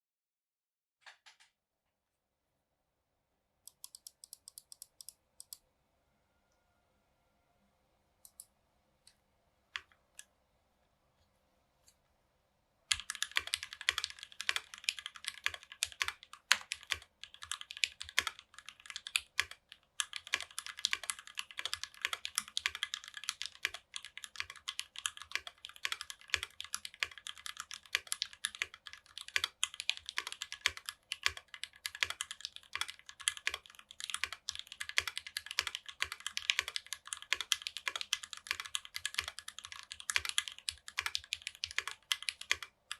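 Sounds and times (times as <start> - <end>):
typing on mechanical keyboard: 12.9 - 42.9.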